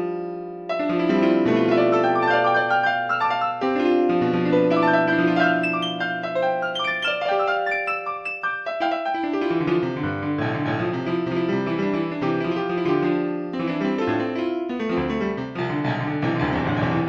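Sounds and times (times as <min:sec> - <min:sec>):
slow piano music: 0:00.0 - 0:17.0.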